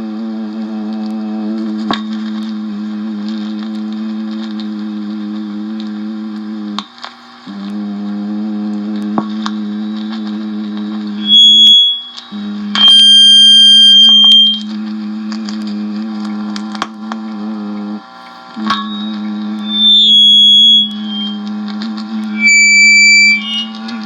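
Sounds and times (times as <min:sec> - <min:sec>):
person humming low note: 0:07.5 - 0:18.0, 0:18.6 - 0:24.0
piercing high-pitched tone: 0:11.2 - 0:14.8, 0:18.6 - 0:24.0.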